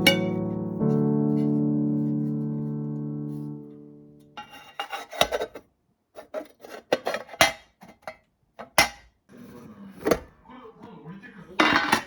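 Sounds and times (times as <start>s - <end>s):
utensils scraping on cookware: 4.4s - 5.6s, 6.2s - 8.2s.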